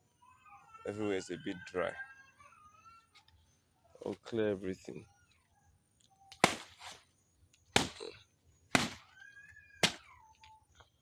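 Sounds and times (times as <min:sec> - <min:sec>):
blade chopping plantain: 0:06.4 - 0:06.8, 0:07.8 - 0:08.1, 0:08.7 - 0:09.0, 0:09.8 - 0:10.0.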